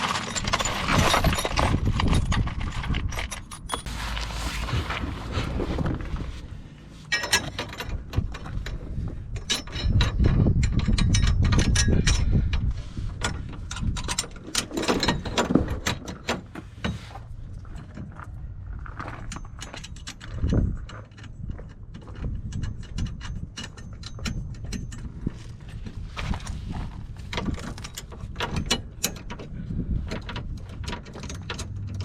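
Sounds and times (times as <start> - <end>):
metal tools clinking: 0.0 - 4.0, 7.0 - 12.3
low rumbling noise: 3.8 - 14.1.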